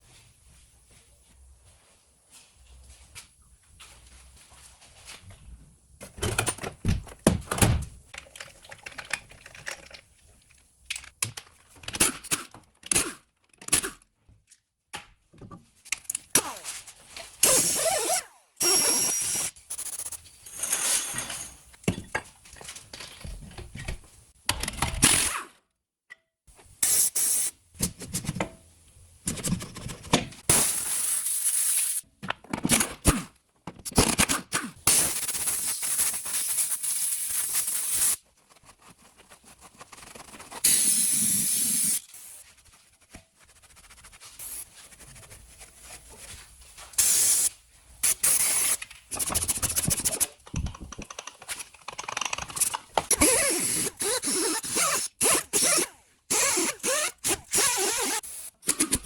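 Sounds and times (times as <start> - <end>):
tools scraping and clicking: 48.4 - 59.0.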